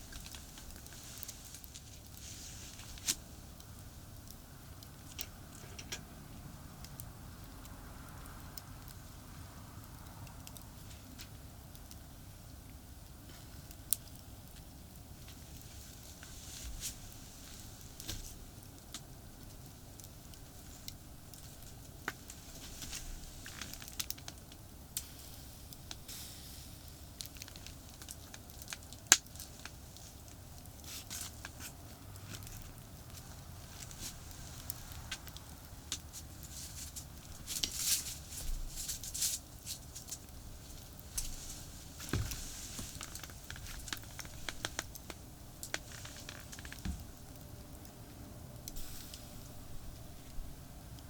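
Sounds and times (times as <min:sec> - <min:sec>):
hands rustling and crinkling: 0:00.0 - 0:03.8, 0:13.3 - 0:47.9
campfire crackling: 0:00.0 - 0:51.0
distant highway traffic: 0:31.5 - 0:51.0.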